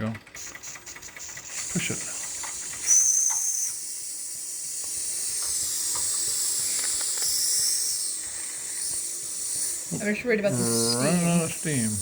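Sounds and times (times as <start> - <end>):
steam hissing from boiler: 0.2 - 12.0
steam whistle blast: 2.8 - 9.8.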